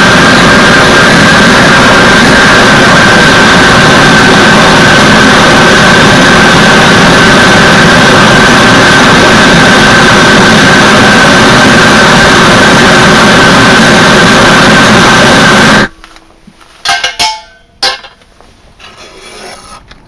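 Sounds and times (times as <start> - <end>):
gas forge burner rushing: 0.0 - 16.0.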